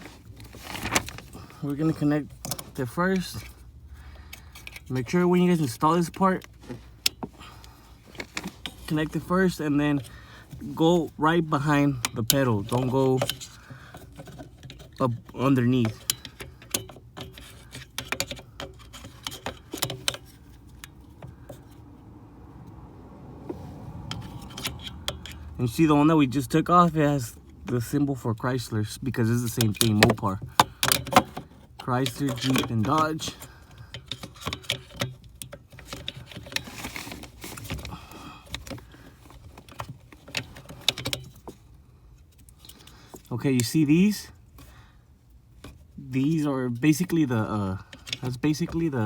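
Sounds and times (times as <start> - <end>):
hands handling car part clicks: 0.0 - 22.0, 22.6 - 43.8, 45.3 - 49.0.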